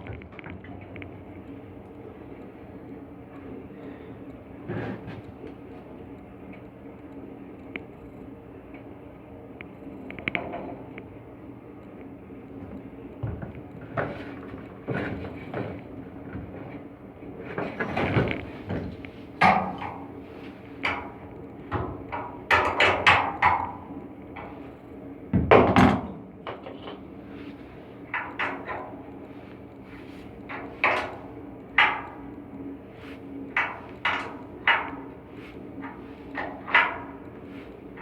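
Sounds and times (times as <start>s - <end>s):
steady low hum: 0.0s - 38.0s
knocks and clanks on metal: 13.2s - 16.8s, 17.4s - 24.7s, 25.3s - 27.1s, 28.1s - 32.4s, 33.0s - 38.0s.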